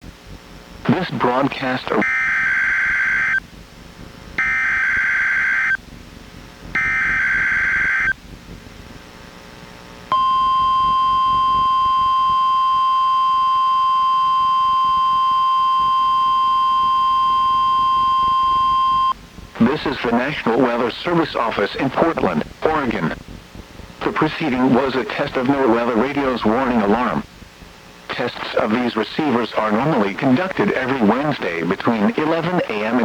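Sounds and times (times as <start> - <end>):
steady warning alarm tone: 2.0 - 3.4, 4.4 - 5.8, 6.8 - 8.2, 10.1 - 19.2.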